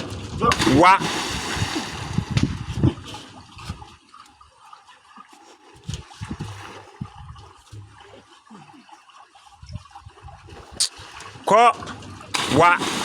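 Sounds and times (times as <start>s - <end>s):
river water splashing: 0.5s - 5.6s, 12.3s - 13.0s
low thumps and knocks: 1.1s - 3.8s.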